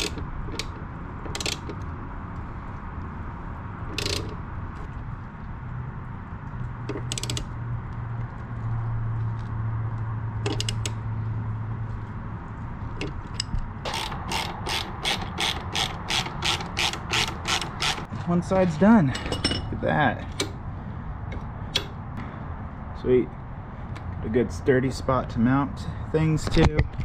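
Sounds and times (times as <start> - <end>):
ratchet wrench clicking: 0.0 - 1.8, 3.9 - 4.4, 6.9 - 7.5, 10.4 - 11.0, 13.3 - 18.1.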